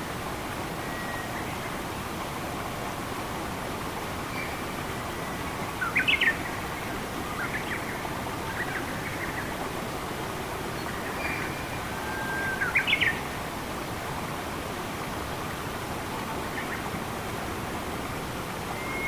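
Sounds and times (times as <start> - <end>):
running water: 0.0 - 19.0.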